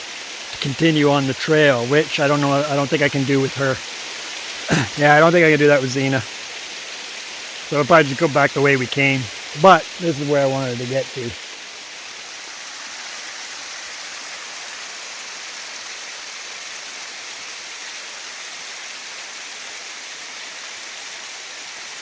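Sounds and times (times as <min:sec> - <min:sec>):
waterfall rushing: 0:00.0 - 0:11.5.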